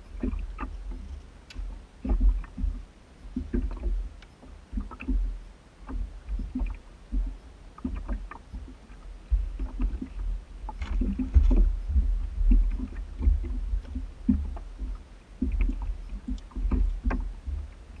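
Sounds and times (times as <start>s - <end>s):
low rumble: 0.0s - 18.0s
water lapping: 0.0s - 18.0s
knocks against the hull: 5.9s - 17.8s.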